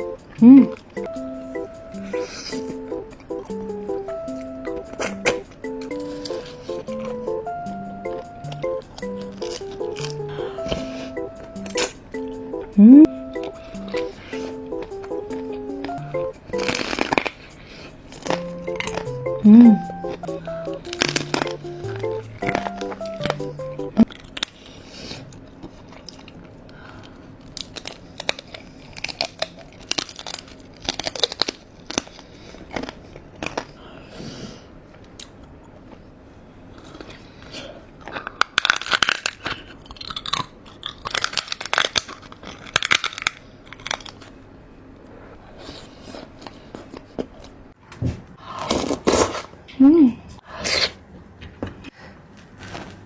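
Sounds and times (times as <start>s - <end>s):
wet chewing and crunching: 8.9s - 10.9s, 13.4s - 19.9s, 20.8s - 33.8s, 36.7s - 44.4s.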